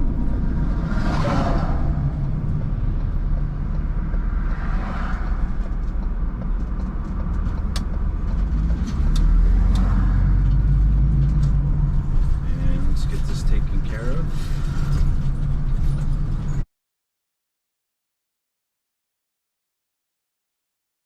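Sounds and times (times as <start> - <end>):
vehicle engine and road rumble: 0.0 - 16.7.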